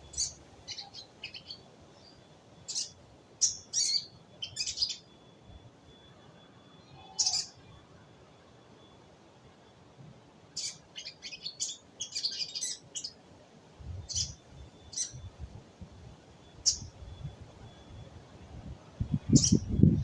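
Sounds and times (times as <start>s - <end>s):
bird chirping: 0.0s - 5.3s, 6.7s - 7.8s, 10.5s - 13.2s, 14.0s - 15.4s, 16.4s - 18.1s, 19.2s - 20.0s.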